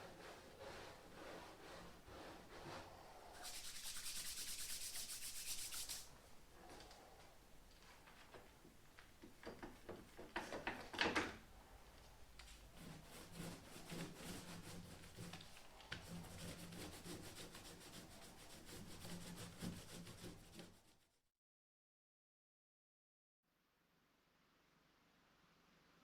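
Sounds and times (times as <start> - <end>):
rubbing and scraping on wood: 0.0 - 6.2, 12.5 - 20.8.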